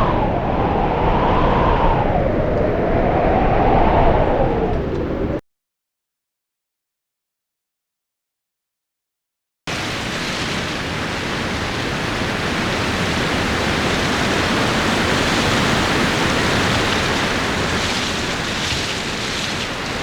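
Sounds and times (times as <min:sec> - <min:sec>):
strong wind: 0:00.0 - 0:05.4, 0:09.7 - 0:20.0.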